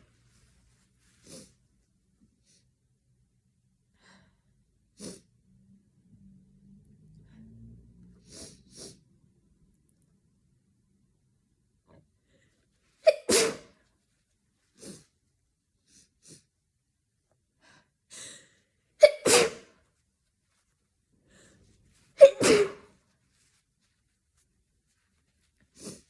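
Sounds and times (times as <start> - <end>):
person sneezing: 13.0 - 13.8, 19.0 - 19.8, 22.2 - 22.9
faint breaths: 21.2 - 22.0.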